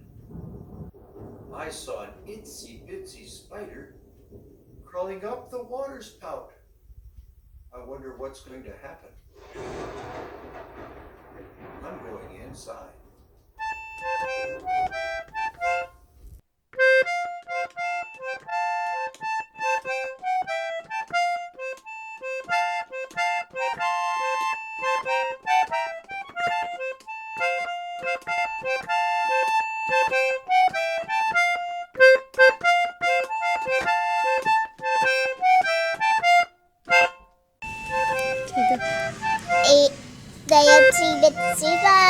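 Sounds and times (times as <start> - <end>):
bouncy instrumental melody: 13.6 - 15.9, 16.8 - 42.0.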